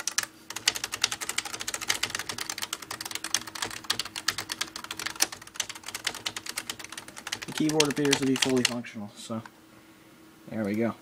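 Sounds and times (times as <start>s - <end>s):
fast keyboard typing: 0.0s - 8.8s.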